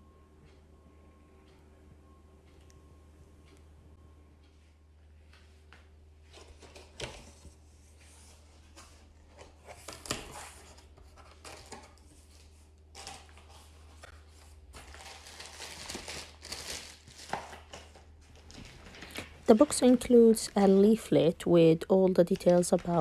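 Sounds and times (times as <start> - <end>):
packaging crinkling and tearing: 13.0 - 13.8, 14.8 - 19.6.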